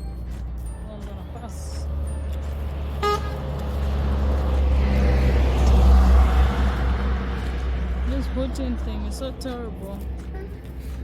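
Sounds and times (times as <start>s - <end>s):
vehicle passing: 0.0s - 11.0s
vehicle horn toot: 3.0s - 3.4s.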